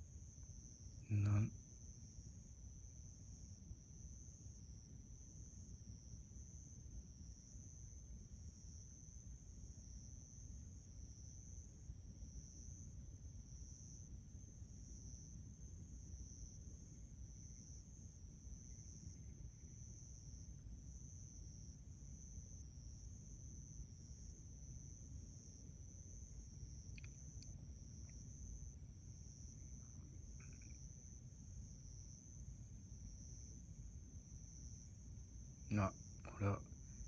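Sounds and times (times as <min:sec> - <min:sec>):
crickets trilling: 0:01.1 - 0:02.3, 0:16.2 - 0:37.0.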